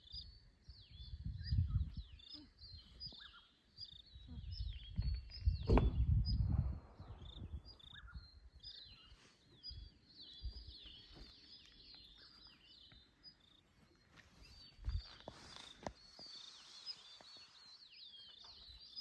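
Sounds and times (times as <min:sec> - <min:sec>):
small birds chirping: 0:00.0 - 0:19.0
faint low thumps: 0:04.3 - 0:07.7
low rumble with sharp knock: 0:05.6 - 0:07.2.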